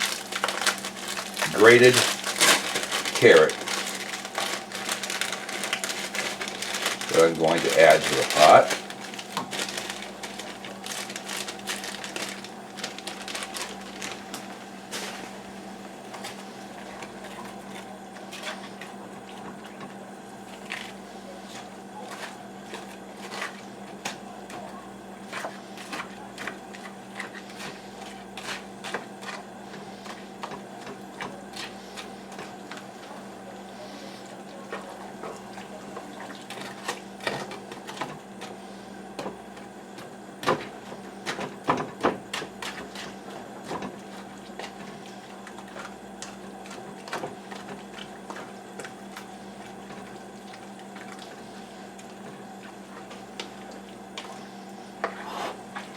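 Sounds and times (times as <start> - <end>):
steady low hum: 0.0 - 55.9.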